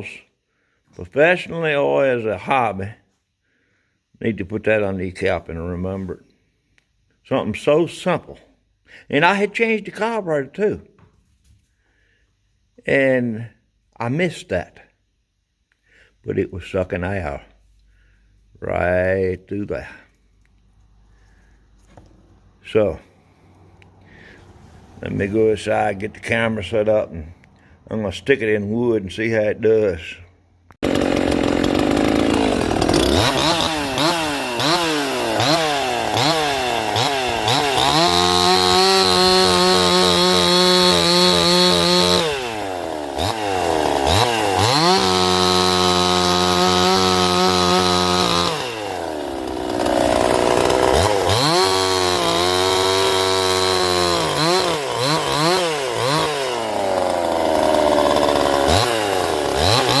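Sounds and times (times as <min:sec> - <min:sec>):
chainsaw revving: 0:23.1 - 0:27.4, 0:30.8 - 1:00.0
chainsaw cutting wood: 0:30.8 - 1:00.0.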